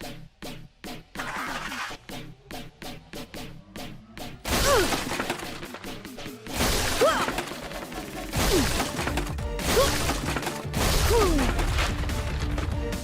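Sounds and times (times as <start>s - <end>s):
background music: 0.0s - 13.0s
wooden planks cracking and splintering: 4.5s - 5.8s, 6.6s - 12.7s.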